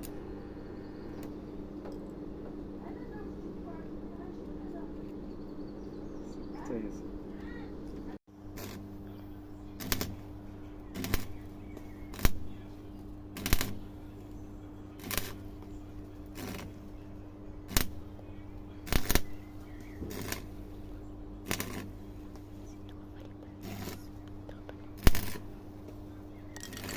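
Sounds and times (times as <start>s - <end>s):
electrical hum: 0.0s - 26.9s
welding crackling bursts: 8.4s - 26.9s.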